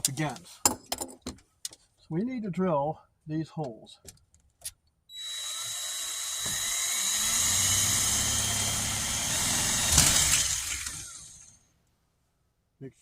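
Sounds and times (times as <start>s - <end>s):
power drill boring: 5.1s - 11.6s.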